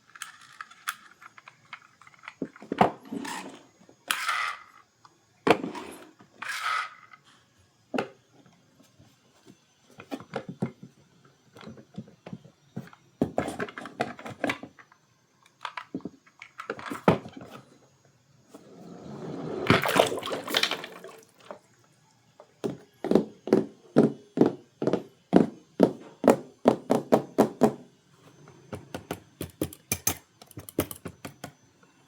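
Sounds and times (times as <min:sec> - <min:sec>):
toy cars clicking and tapping: 0:00.0 - 0:02.6, 0:29.0 - 0:31.6.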